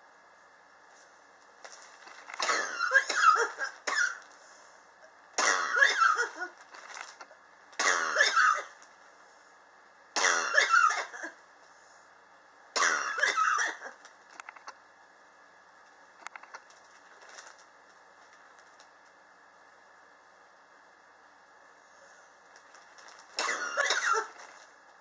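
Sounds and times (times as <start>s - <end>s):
person coughing: 2.4s - 4.2s, 5.4s - 6.6s, 7.8s - 8.8s, 10.2s - 11.4s, 12.8s - 14.0s, 23.4s - 24.4s.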